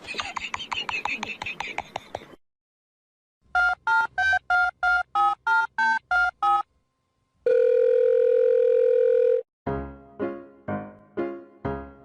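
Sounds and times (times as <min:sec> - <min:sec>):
telephone line tone: 0:07.4 - 0:09.4.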